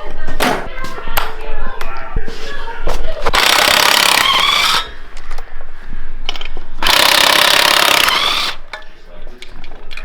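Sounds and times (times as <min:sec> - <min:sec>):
impact wrench whine: 0:03.3 - 0:05.0, 0:06.8 - 0:08.7.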